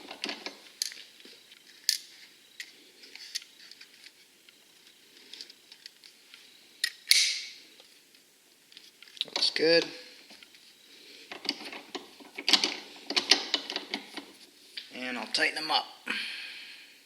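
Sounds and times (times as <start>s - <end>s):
metal and plastic parts clicking: 11.3s - 14.3s.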